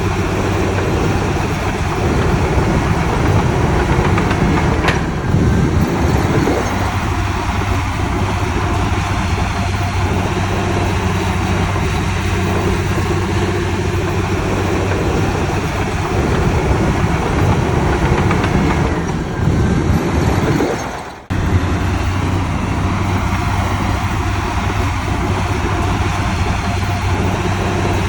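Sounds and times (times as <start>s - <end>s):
heavy diesel engine under load: 0.0s - 28.0s.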